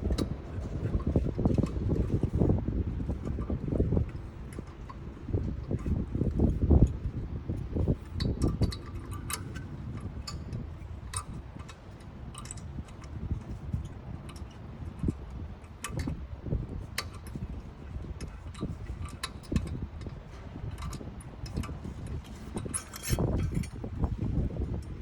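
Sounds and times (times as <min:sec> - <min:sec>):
light metallic clicks and taps: 0:07.8 - 0:16.2, 0:16.8 - 0:17.6, 0:18.2 - 0:24.1.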